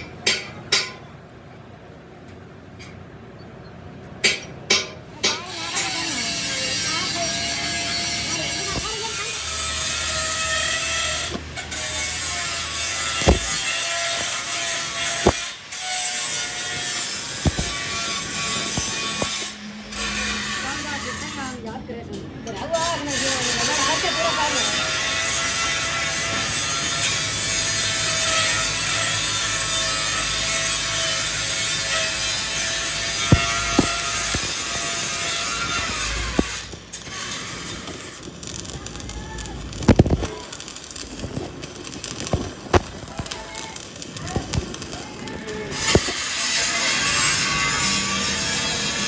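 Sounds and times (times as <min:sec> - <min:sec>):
steady hissing work noise: 0:04.1 - 0:49.0
sharp knocks: 0:04.2 - 0:05.9, 0:13.1 - 0:14.4, 0:17.4 - 0:19.4
metal rasping on a shaft: 0:04.2 - 0:21.8, 0:22.5 - 0:39.0, 0:45.7 - 0:49.0.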